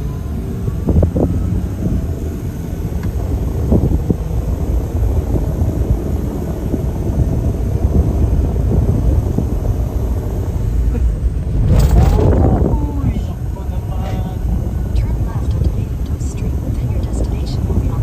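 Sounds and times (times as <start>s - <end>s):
vehicle engine and road rumble: 0.0s - 18.0s.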